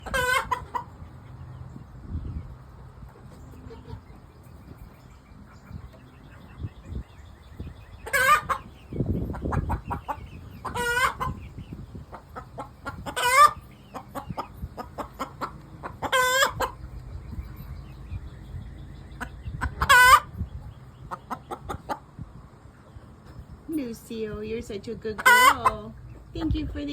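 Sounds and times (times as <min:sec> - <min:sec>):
hen clucking and squawking: 0:00.0 - 0:01.7, 0:03.0 - 0:17.4, 0:19.1 - 0:22.2, 0:25.0 - 0:26.6.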